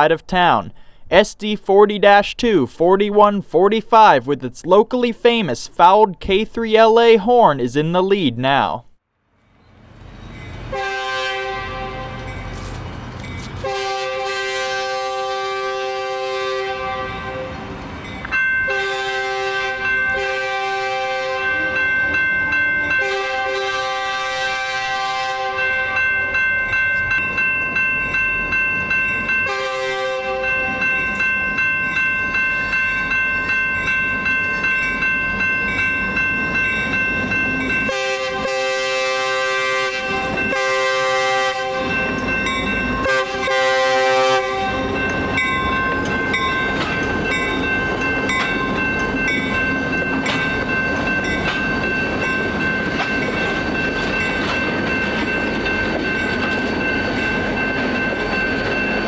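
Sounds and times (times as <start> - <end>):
passing train rumbling: 9.0 - 59.0
crossing bell ringing: 9.5 - 59.0
locomotive horn blasts: 10.6 - 12.7, 13.6 - 17.8, 18.7 - 22.0, 22.6 - 26.4, 29.4 - 30.9, 37.7 - 48.8.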